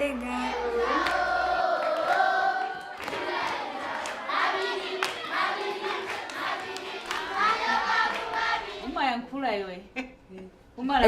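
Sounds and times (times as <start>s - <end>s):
group of voices singing: 0.0s - 9.0s
sharp hand claps: 1.8s - 8.7s.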